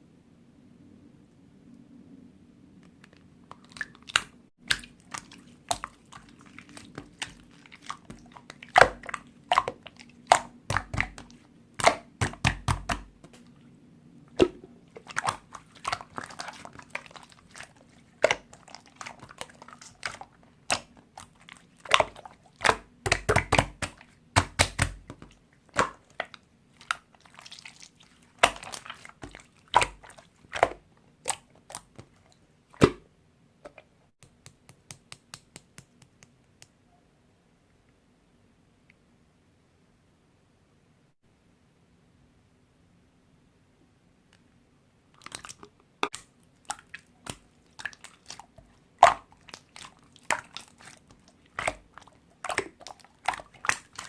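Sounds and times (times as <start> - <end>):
slime squelching: 2.9 - 36.4, 45.2 - 54.0
slime popping and clicking: 6.9 - 13.4, 21.9 - 26.3.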